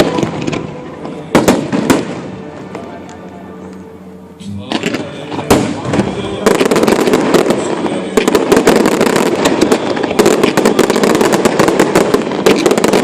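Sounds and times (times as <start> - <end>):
fireworks crackling bangs: 0.0 - 3.0, 4.6 - 13.0.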